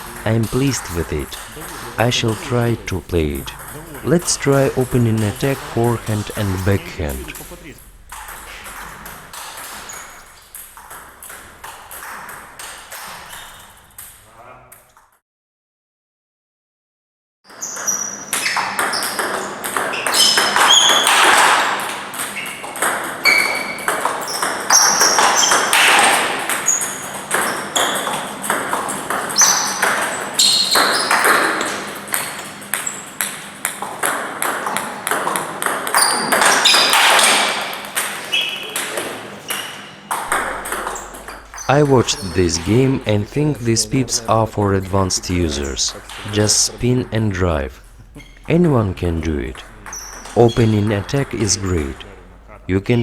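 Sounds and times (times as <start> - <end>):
ball pinging on table: 30.8 - 42.8
ball clicking off rackets: 30.8 - 43.2.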